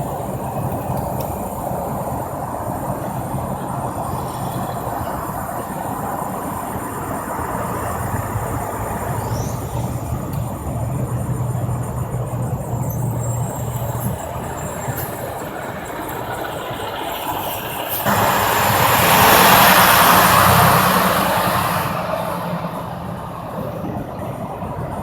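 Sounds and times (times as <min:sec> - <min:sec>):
highway traffic: 0:00.0 - 0:25.0
truck engine hum: 0:00.0 - 0:25.0
vehicle passing by: 0:18.1 - 0:25.0.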